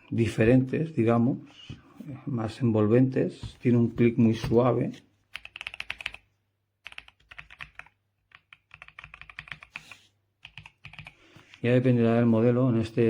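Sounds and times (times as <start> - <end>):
fast typing on mechanical keyboard: 5.3 - 6.2, 6.8 - 11.2.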